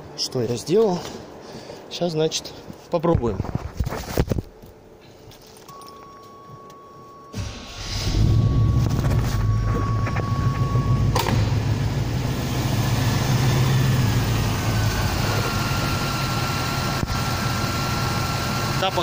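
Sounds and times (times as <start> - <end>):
car engine running steadily: 7.4 - 19.0
steady high beep: 8.1 - 12.0.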